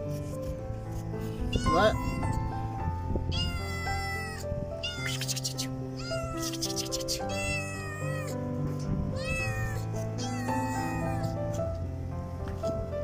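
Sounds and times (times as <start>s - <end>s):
background music: 0.0s - 13.0s
kitten meowing: 1.3s - 11.6s.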